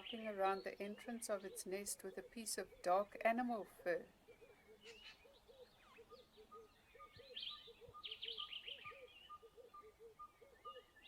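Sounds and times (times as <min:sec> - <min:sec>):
low arched bird call: 0:04.3 - 0:11.0.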